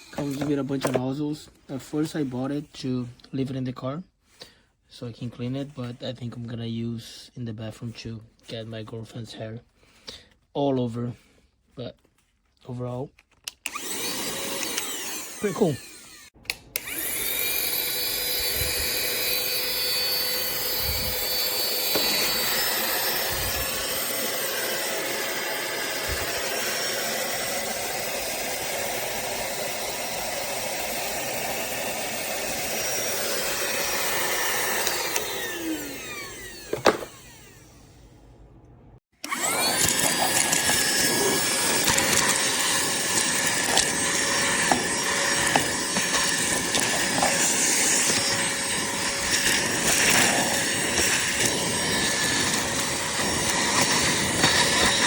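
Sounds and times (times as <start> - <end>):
handheld vacuum motor whine: 0.0 - 1.0, 13.6 - 38.0, 39.2 - 55.0
whirring: 0.0 - 1.0, 13.5 - 38.0, 39.2 - 55.0.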